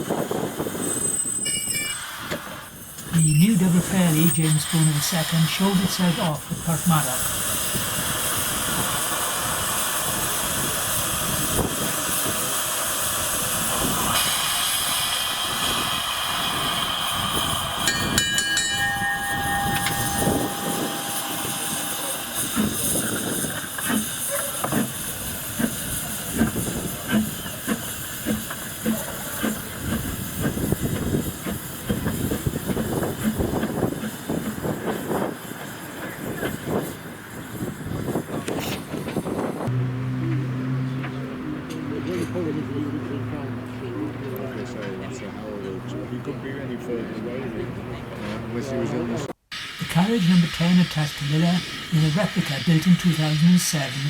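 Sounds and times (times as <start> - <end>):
locomotive exhaust beats: 0.0 - 44.7, 49.5 - 54.0
steam hissing: 0.1 - 39.7, 49.5 - 54.0
steam locomotive whistle: 3.2 - 12.8, 13.4 - 29.6, 49.5 - 54.0.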